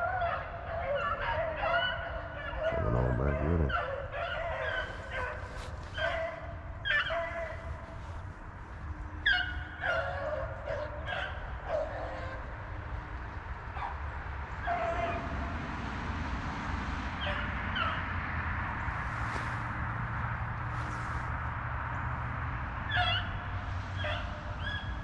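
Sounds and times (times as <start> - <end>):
hounds baying: 0.0 - 8.3, 9.2 - 12.5, 22.9 - 25.0.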